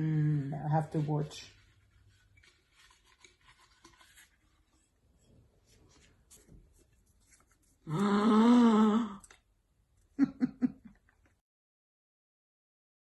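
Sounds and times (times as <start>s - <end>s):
person drawn-out vocal sound: 0.0s - 0.6s, 7.9s - 9.4s.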